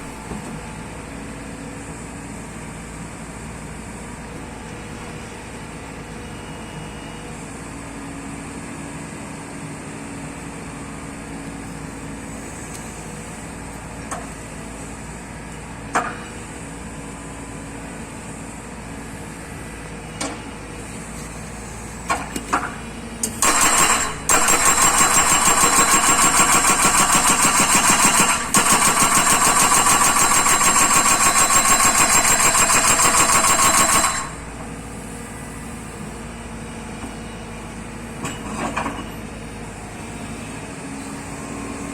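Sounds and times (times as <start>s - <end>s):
excavator engine running: 0.0s - 1.7s, 20.4s - 41.9s
hydraulic breaker hammering: 22.1s - 34.7s.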